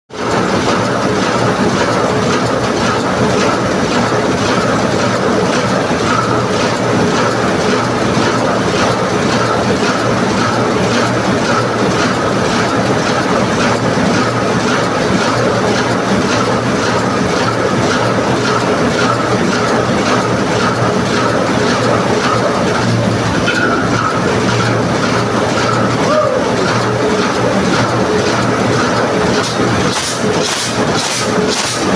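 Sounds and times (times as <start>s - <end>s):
heavy machinery hum: 0.1s - 31.9s.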